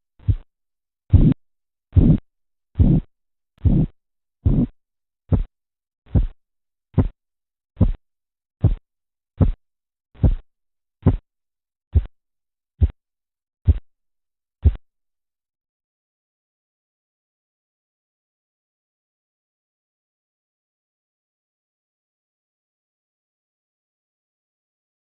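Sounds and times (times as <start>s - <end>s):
heartbeat through stethoscope: 0.2s - 0.5s, 1.1s - 5.5s, 6.1s - 6.4s, 7.0s - 7.2s, 7.8s - 8.0s, 8.6s - 8.8s, 9.4s - 9.6s, 10.2s - 11.3s, 11.9s - 12.2s, 12.8s - 13.0s, 13.7s - 13.9s, 14.6s - 14.8s.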